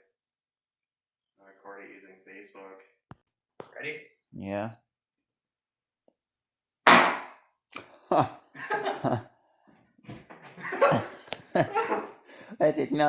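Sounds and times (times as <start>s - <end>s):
loudspeaker pop with buzzing: 6.9s - 7.4s
laughter: 8.0s - 9.4s, 10.4s - 12.5s.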